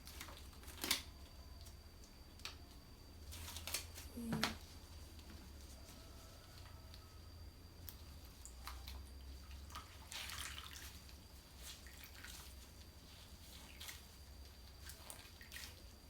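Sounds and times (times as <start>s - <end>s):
water splashing and dripping in basin: 7.8s - 16.0s.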